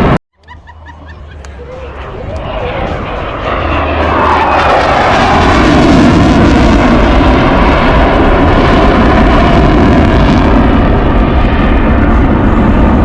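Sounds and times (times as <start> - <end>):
jet engines passing loudly: 0.0 - 13.0.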